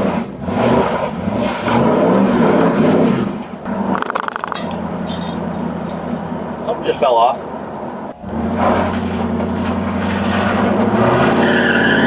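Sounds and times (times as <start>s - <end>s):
car engine revving and idling: 0.0s - 12.0s
rattle of clicks: 3.9s - 6.0s.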